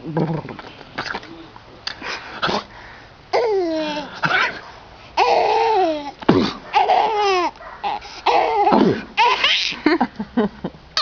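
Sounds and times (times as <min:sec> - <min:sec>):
baby laughing: 0:03.3 - 0:04.4, 0:05.2 - 0:10.0.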